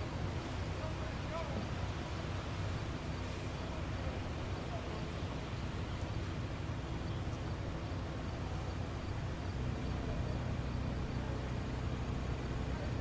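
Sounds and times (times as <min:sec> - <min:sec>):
background hiss: 0:00.0 - 0:13.0
vehicle engine rumbling: 0:00.0 - 0:13.0.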